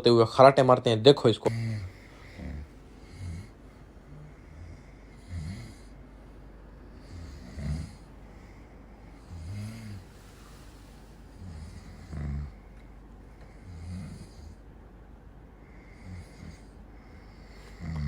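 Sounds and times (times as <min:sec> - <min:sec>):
man snoring: 0:01.5 - 0:05.9, 0:06.9 - 0:08.1, 0:09.1 - 0:10.1, 0:11.4 - 0:12.7, 0:13.5 - 0:14.6, 0:15.7 - 0:18.0.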